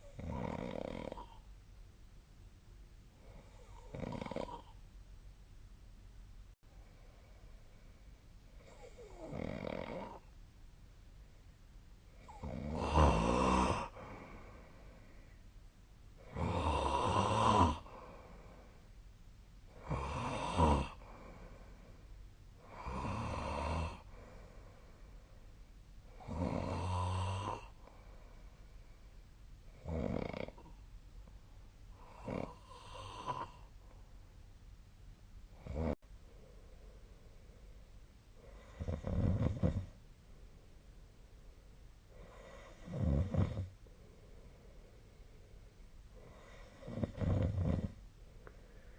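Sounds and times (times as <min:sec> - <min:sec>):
person snoring: 0:00.0 - 0:01.4, 0:03.2 - 0:04.8, 0:08.6 - 0:10.2, 0:12.2 - 0:14.7, 0:16.2 - 0:18.4, 0:19.7 - 0:21.5, 0:22.6 - 0:24.2, 0:26.1 - 0:27.8, 0:29.8 - 0:30.8, 0:32.0 - 0:33.7, 0:35.6 - 0:36.0, 0:38.4 - 0:39.9, 0:42.2 - 0:43.7, 0:46.2 - 0:48.0.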